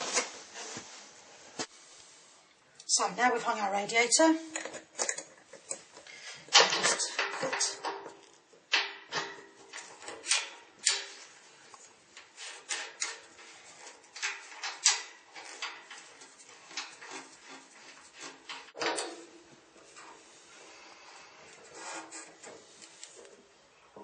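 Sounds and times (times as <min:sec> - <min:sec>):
tools and metal pipe fittings clicking: 0:04.4 - 0:20.2.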